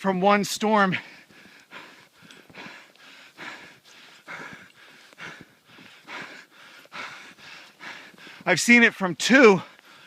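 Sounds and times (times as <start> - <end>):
man breathing hard: 0.8 - 8.6, 9.6 - 10.0.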